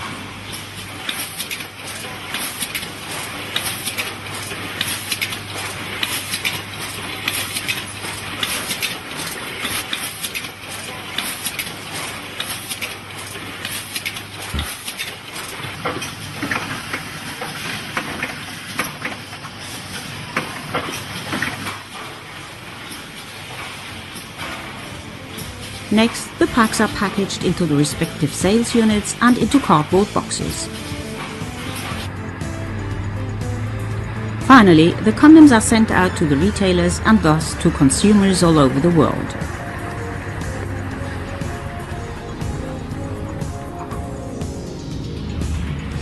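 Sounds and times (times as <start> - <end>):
packaging machine rattling and clicking: 0.0 - 32.1
low machine hum: 0.0 - 46.0.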